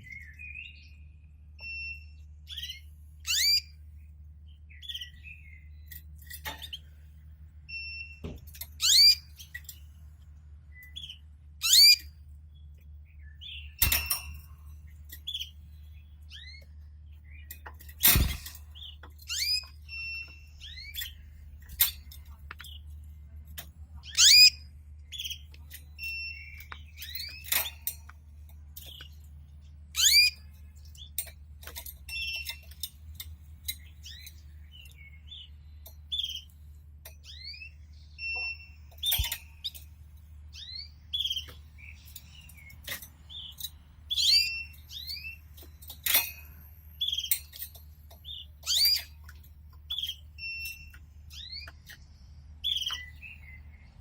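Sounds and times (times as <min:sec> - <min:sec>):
canaries chirping: 0:01.6 - 0:03.8, 0:08.8 - 0:09.6, 0:10.8 - 0:14.2, 0:14.9 - 0:22.9, 0:24.0 - 0:28.0, 0:28.8 - 0:31.2, 0:32.0 - 0:32.8, 0:33.6 - 0:39.9, 0:40.5 - 0:46.1, 0:46.9 - 0:54.0.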